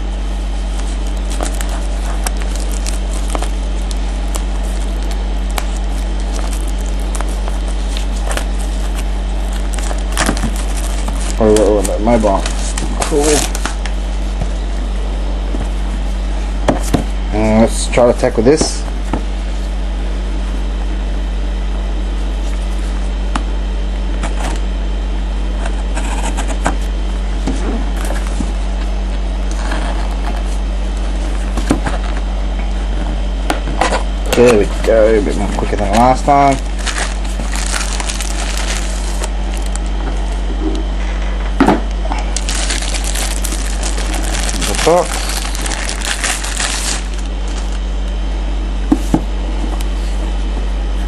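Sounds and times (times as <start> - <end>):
low electrical hum: 0.0 - 51.0
packaging crackling: 0.6 - 14.0, 35.6 - 40.0, 42.4 - 47.8.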